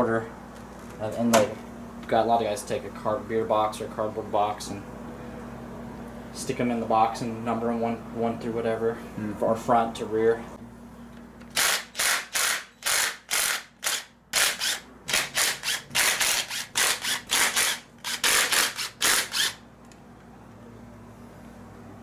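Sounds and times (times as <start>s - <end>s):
ratchet wrench clicking: 11.5s - 19.6s.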